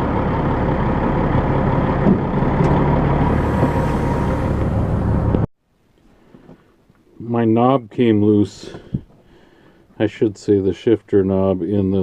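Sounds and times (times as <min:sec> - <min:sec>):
truck diesel engine running: 0:00.0 - 0:05.5.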